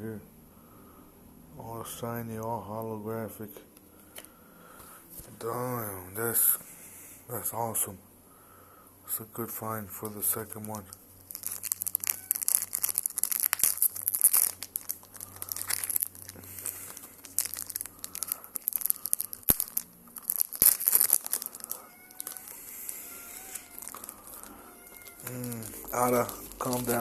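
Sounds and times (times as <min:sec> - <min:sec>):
cards rustling: 0:10.0 - 0:27.0
foil wrapper crinkling: 0:10.1 - 0:27.0.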